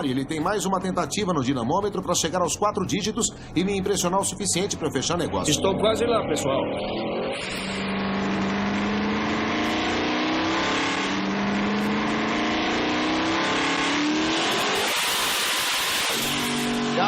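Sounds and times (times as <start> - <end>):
car engine full throttle revving: 4.4 - 17.0.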